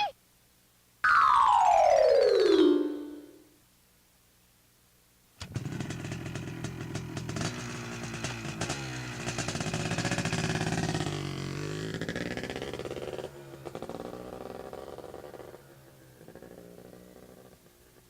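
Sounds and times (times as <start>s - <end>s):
descending pitched tone: 1.0s - 3.4s
engine-like rattling effect: 5.5s - 15.6s.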